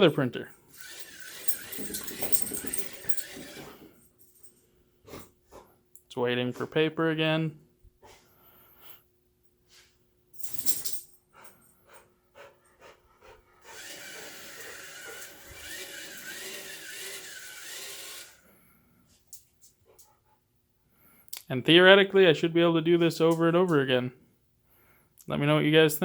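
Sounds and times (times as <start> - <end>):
small electric motor whirring: 0.7 - 3.7, 13.6 - 18.4.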